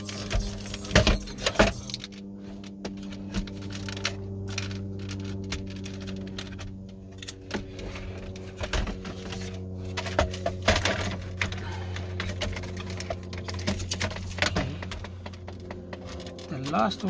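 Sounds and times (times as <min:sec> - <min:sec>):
steady low hum: 0:00.0 - 0:17.0
plastic trim clicking and rattling: 0:00.1 - 0:09.4.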